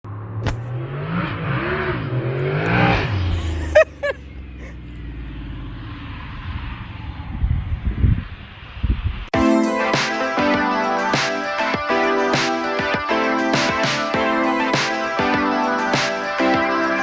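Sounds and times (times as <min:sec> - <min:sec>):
car engine revving: 0:00.1 - 0:08.7.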